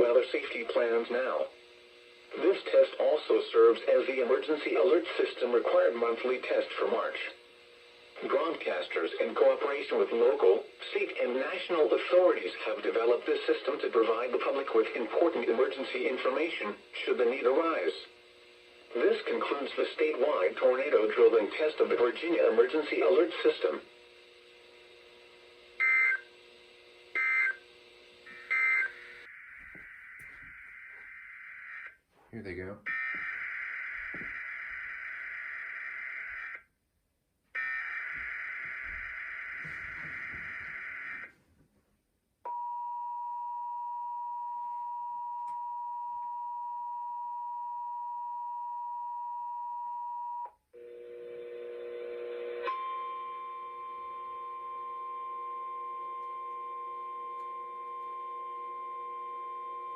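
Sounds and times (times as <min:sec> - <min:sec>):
steady radio hiss: 0:00.0 - 0:36.6, 0:38.0 - 0:41.4.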